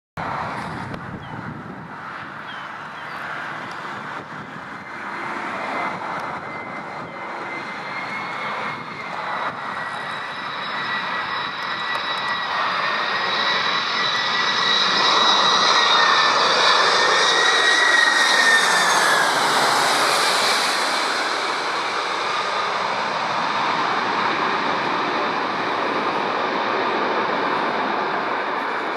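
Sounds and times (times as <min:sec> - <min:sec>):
jet airliner engines whining: 0:00.2 - 0:28.9.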